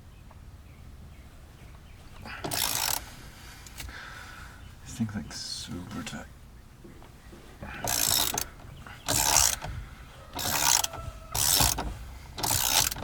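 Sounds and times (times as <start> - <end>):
socket wrench ratcheting: 2.4 - 3.0, 7.8 - 9.8, 10.4 - 13.0.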